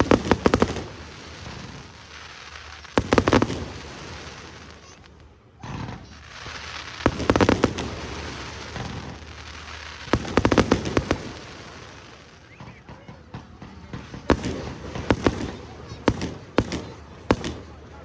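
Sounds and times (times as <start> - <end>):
fireworks cracking: 0.0 - 18.0
fireworks rumble: 0.0 - 18.0
firework bang: 5.6 - 17.7.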